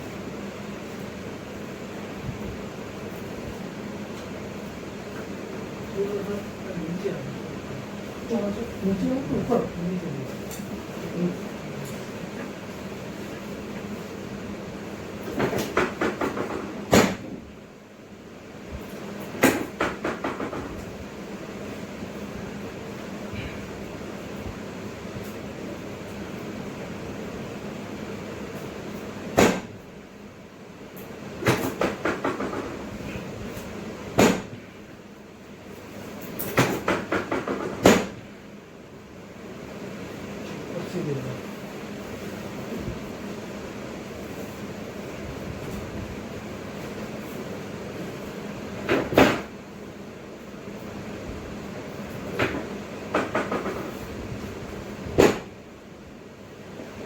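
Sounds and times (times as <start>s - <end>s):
low steady hum: 0.0s - 15.6s
sharp knocks and clacks: 15.3s - 17.4s, 19.3s - 20.9s, 31.4s - 32.9s, 36.4s - 38.2s, 52.4s - 54.0s
sharp knock: 15.4s - 17.4s, 29.4s - 29.7s, 34.2s - 34.6s, 55.2s - 55.5s.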